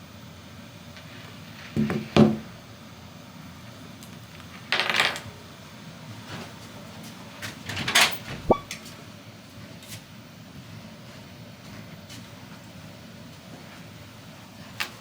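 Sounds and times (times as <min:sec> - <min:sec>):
quick falling squeak: 0:08.4 - 0:08.7.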